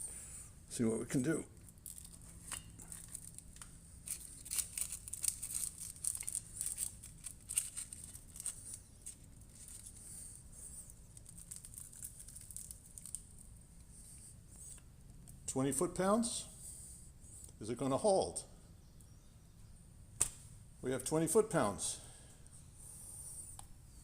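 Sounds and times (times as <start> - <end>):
clicks scrapes and rustles of handling: 1.9 - 10.0.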